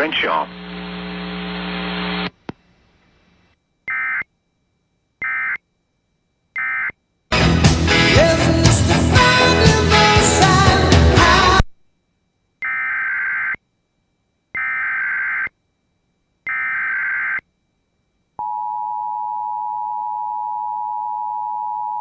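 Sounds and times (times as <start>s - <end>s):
warbling digital data tones: 12.6s - 13.6s, 14.5s - 15.5s, 16.5s - 17.4s.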